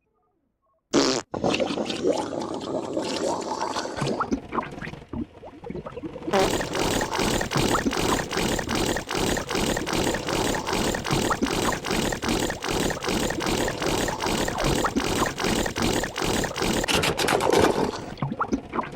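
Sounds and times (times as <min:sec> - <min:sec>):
machine churning and sloshing: 0:06.3 - 0:18.6.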